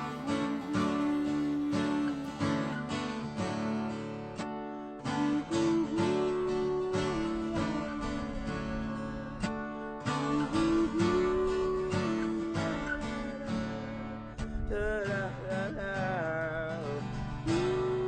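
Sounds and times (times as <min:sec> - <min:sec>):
held melody line: 0:00.0 - 0:04.4, 0:05.0 - 0:14.3
strummed acoustic guitar: 0:00.0 - 0:18.0.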